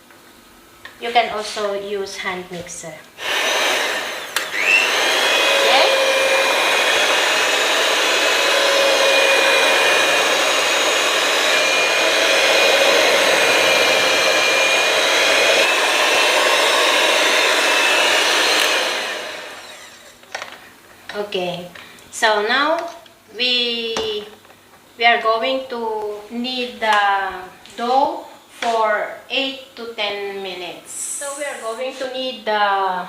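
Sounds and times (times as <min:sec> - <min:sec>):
electric hand mixer whine: 0:03.2 - 0:20.6.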